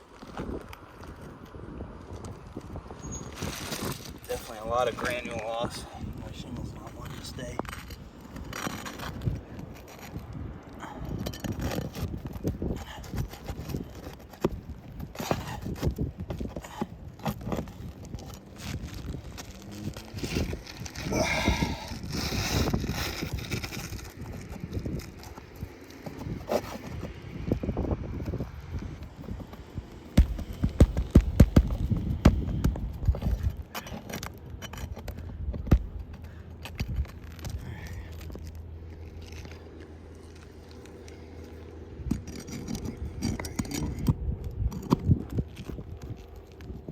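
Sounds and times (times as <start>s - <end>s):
wind on microphone: 0.0s - 38.4s, 41.9s - 46.9s
shingles knocking and scraping: 2.6s - 46.8s
tools knocking on roof shingles: 30.2s - 34.0s.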